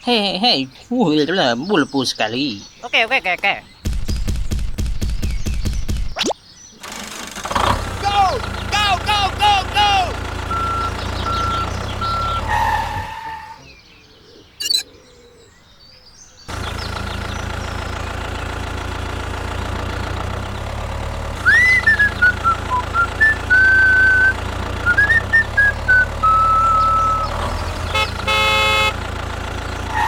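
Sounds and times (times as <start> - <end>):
truck engine hum: 6.8 - 13.7, 16.5 - 30.0
high whistling chirps: 10.4 - 13.7, 14.6 - 14.9, 21.4 - 27.8
reversing beeps: 10.5 - 12.5.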